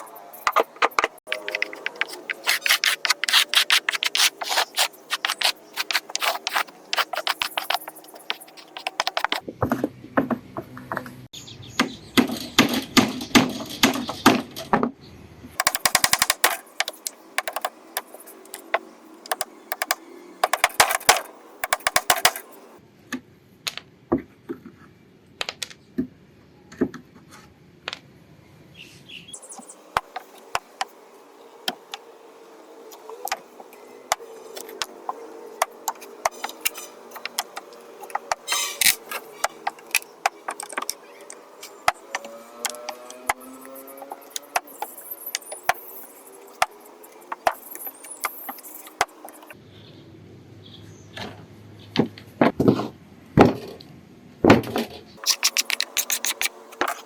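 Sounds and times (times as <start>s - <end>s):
sharp clicks and knocks: 0.5s - 10.3s, 15.6s - 22.5s, 55.2s - 57.0s.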